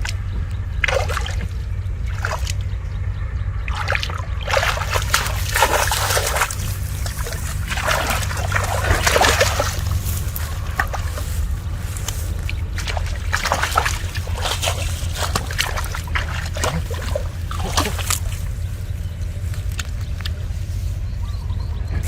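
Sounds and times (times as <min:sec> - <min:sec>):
shallow water splashing: 0:00.0 - 0:02.8, 0:03.6 - 0:20.9
steady low rumble: 0:00.0 - 0:22.0.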